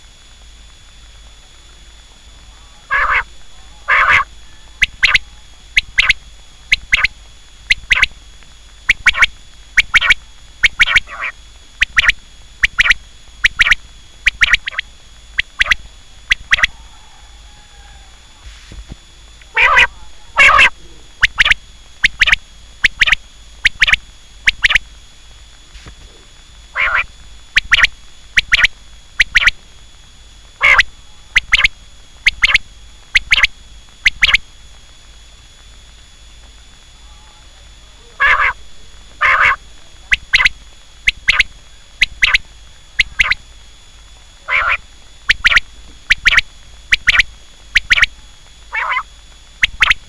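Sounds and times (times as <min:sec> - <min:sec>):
quail calling: 0:02.6 - 0:08.2, 0:08.8 - 0:18.5, 0:19.5 - 0:24.8, 0:26.7 - 0:29.6, 0:30.6 - 0:31.7, 0:32.3 - 0:33.5, 0:38.2 - 0:38.6, 0:39.2 - 0:43.4, 0:44.4 - 0:48.1, 0:48.7 - 0:50.0.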